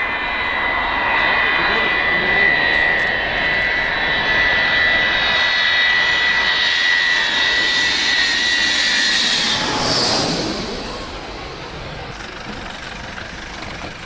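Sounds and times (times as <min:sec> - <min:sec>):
jet engines high whine: 0:00.0 - 0:14.0.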